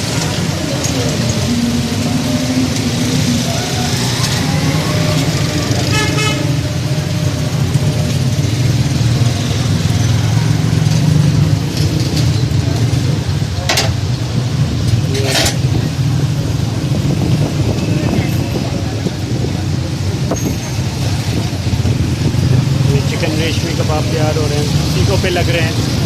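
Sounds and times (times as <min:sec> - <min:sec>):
street traffic rumble: 0:00.0 - 0:26.0
vehicle horn tooting: 0:05.8 - 0:06.8.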